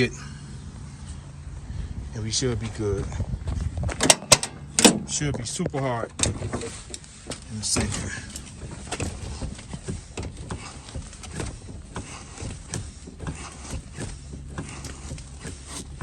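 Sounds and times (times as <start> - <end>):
brake pedal clicking and knocking: 3.5 - 16.0.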